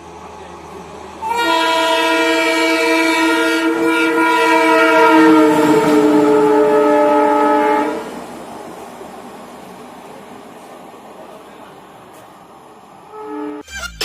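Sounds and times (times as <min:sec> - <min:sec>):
multi-tone air horn blast: 0:01.2 - 0:08.1, 0:13.1 - 0:14.0.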